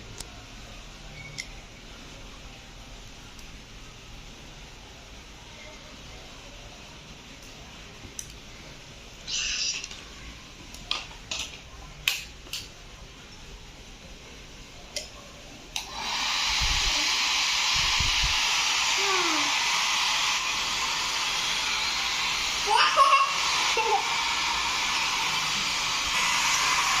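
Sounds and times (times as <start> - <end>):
hair dryer blowing air: 15.8 - 27.0.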